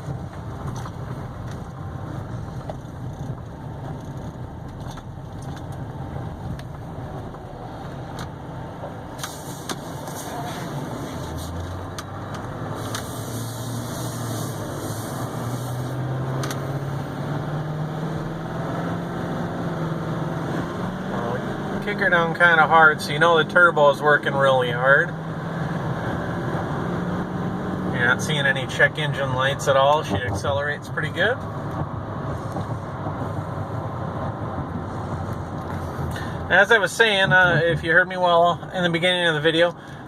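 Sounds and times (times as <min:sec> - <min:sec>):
diesel truck engine accelerating: 0:00.0 - 0:40.0
road noise: 0:00.0 - 0:40.0.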